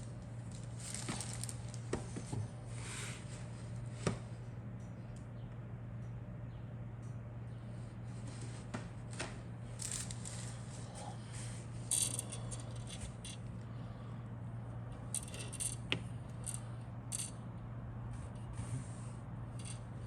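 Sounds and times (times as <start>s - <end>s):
steady low hum: 0.0s - 20.0s
plastic parts clicking and rustling: 0.5s - 1.8s, 9.8s - 10.6s.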